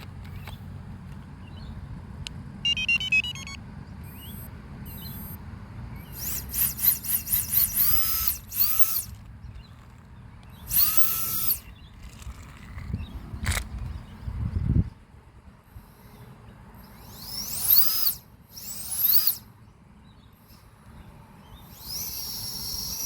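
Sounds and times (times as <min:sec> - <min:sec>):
electric fan whine spinning up: 0:00.0 - 0:23.0
short beep tones: 0:02.6 - 0:05.4.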